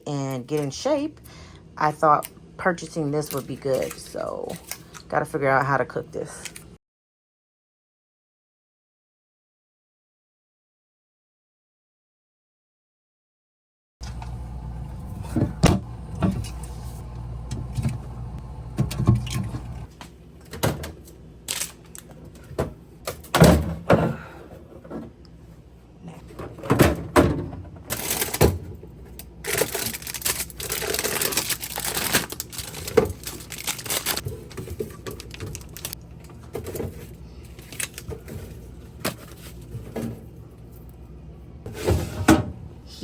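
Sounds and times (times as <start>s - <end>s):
items knocking and thudding: 22.4s - 25.2s, 26.2s - 28.8s, 30.6s - 37.2s, 41.7s - 42.7s
plastic rustling and crinkling: 27.9s - 40.0s.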